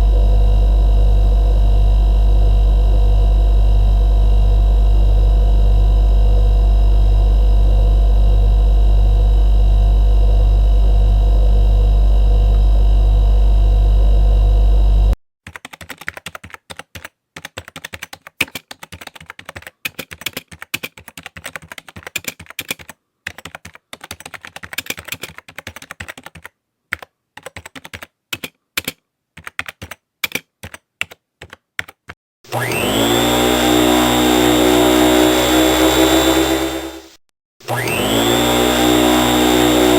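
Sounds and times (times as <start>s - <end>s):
loud low hum: 0.0s - 15.2s, 32.6s - 39.9s
typing on computer keyboard: 15.4s - 32.2s.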